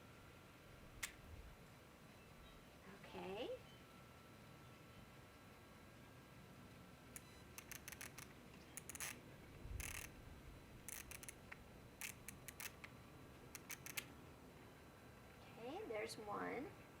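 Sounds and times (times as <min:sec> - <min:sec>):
film camera clicks: 0:07.2 - 0:09.2, 0:09.8 - 0:10.1, 0:10.9 - 0:12.9, 0:13.5 - 0:14.1.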